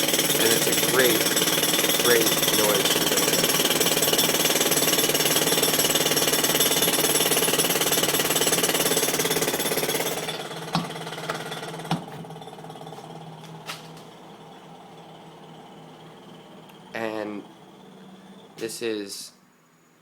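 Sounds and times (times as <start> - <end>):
jackhammer rattling: 0.0 - 19.2
sharp knocks: 10.7 - 12.3
faint steady hum: 12.9 - 20.0.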